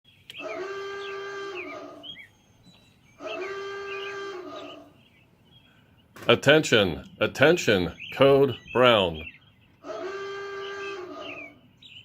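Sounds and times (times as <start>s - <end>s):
long emergency alert tone: 0.4s - 2.2s, 3.2s - 4.9s.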